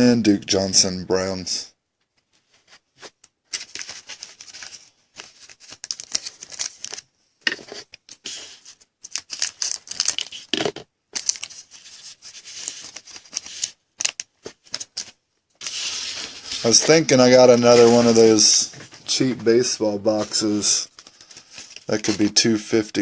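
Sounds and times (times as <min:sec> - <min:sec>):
plastic wrappers crinkling and tearing: 0:03.5 - 0:07.0, 0:08.5 - 0:19.2, 0:20.1 - 0:22.3
cards sliding together: 0:07.5 - 0:08.9.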